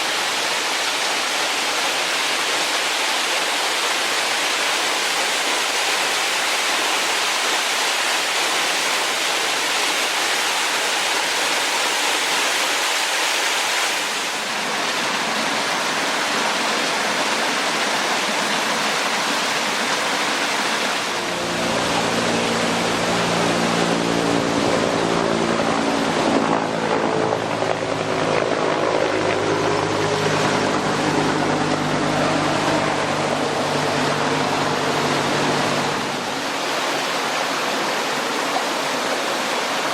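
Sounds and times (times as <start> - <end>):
stream rushing over rocks: 0.0 - 39.9
steady low hum: 21.1 - 36.5.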